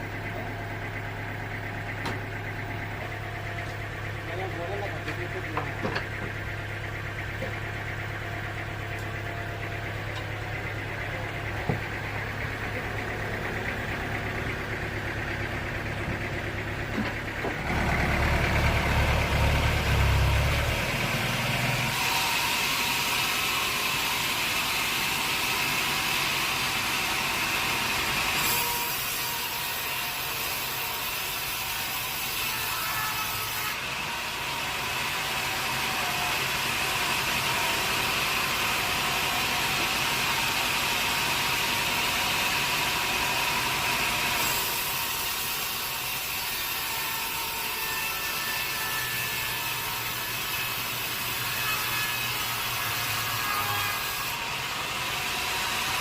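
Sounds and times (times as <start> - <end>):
sawmill machinery running: 0.0 - 56.0
saw cutting through log: 6.9 - 56.0.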